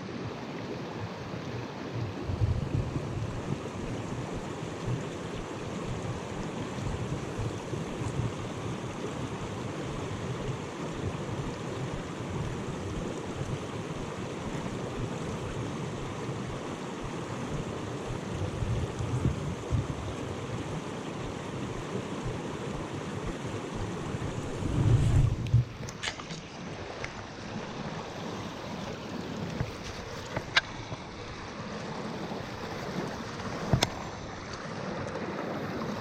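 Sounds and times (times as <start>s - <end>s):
stream water rushing over rocks: 0.0s - 36.0s
low rumbles: 24.1s - 25.9s.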